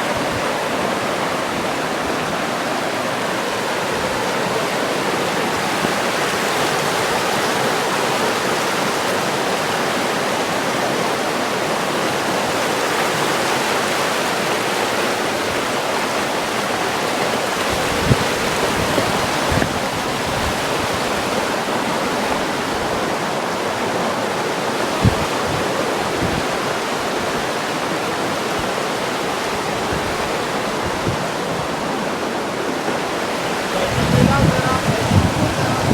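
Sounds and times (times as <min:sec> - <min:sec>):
river rushing over rapids: 0:00.0 - 0:35.9.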